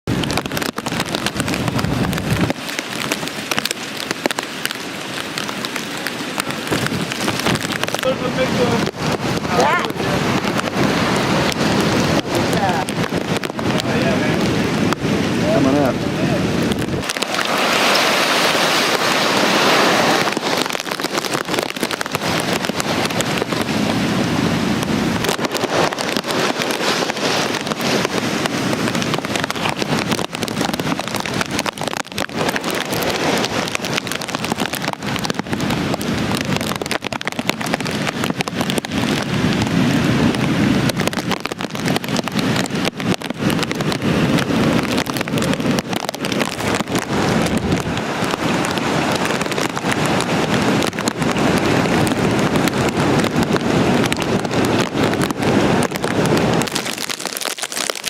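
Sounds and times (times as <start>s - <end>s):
heavy rain: 0.0s - 58.0s
hurricane wind: 0.0s - 58.0s
rain spattering on microphone: 0.0s - 58.0s
wind buffeting microphone: 0.0s - 58.0s.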